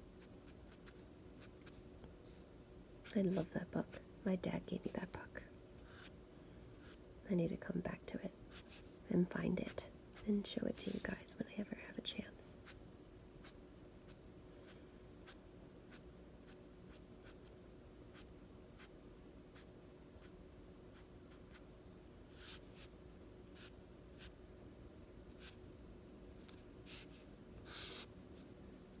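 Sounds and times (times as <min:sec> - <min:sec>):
faint steady hum: 0:00.0 - 0:29.0
drawing tool scratching on paper: 0:27.7 - 0:28.1.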